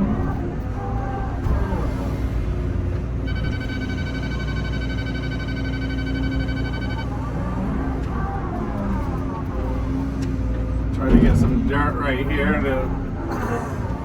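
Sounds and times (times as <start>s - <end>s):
excavator diesel engine running: 0.0s - 14.0s
high electronic beep tone: 3.2s - 7.2s.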